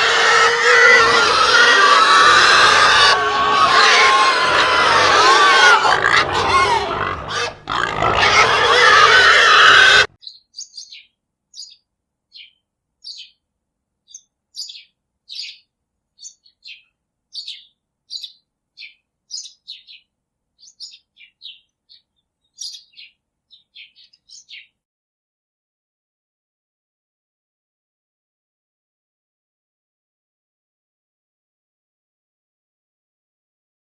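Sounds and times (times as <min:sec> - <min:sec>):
bird chirping: 0:10.2 - 0:13.4, 0:14.0 - 0:24.8.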